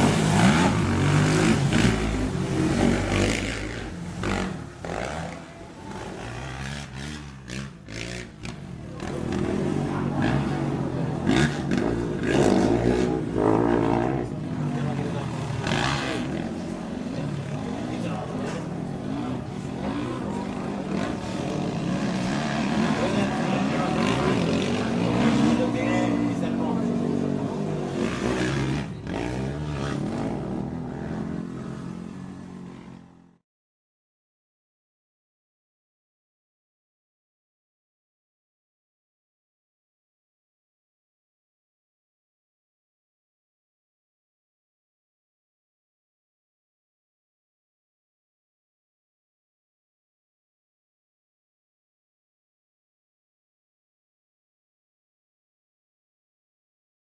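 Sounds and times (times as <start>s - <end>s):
atv engines revving: 0.0s - 33.4s.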